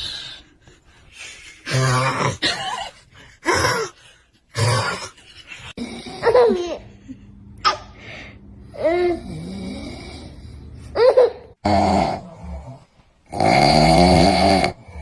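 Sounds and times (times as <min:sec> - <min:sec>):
man snoring loudly: 0:08.8 - 0:10.6, 0:11.6 - 0:15.0.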